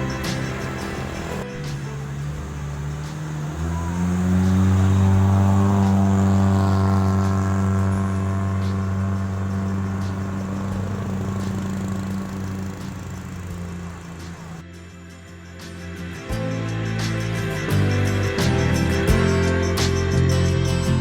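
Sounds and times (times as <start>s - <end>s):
vehicle engine revving: 0.0s - 14.6s.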